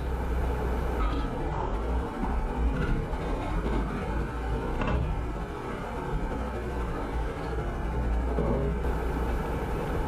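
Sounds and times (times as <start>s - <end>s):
vehicle engine rumble: 0.0s - 10.0s.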